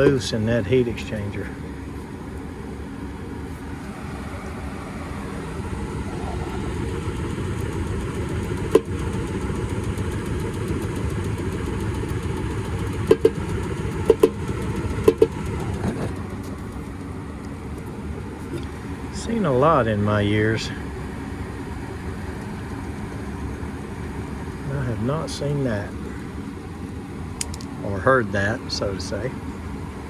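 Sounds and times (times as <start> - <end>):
gas furnace rumbling: 0.0 - 30.0
sharp knocks: 8.7 - 9.1, 12.9 - 16.2.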